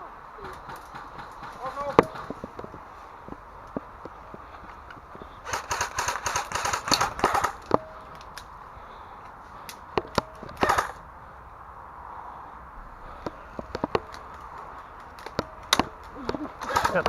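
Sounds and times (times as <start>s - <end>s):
airsoft guns firing: 0.4s - 2.5s, 5.4s - 7.8s, 10.6s - 11.0s, 15.3s - 17.0s.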